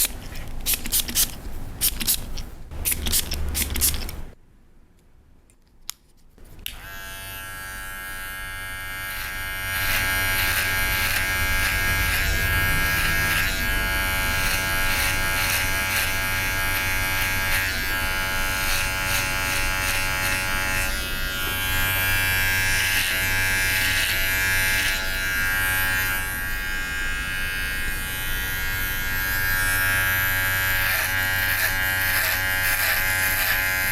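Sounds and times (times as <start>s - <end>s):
scissors snipping hair: 0.0s - 4.3s, 30.6s - 33.9s
electric hair clippers buzzing: 6.6s - 33.9s.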